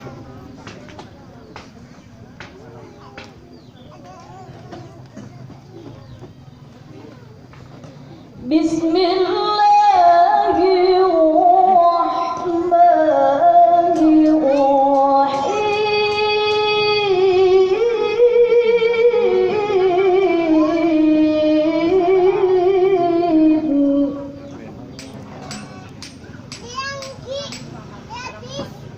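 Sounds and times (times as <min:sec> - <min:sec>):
woman chanting melodically: 0:08.4 - 0:24.6.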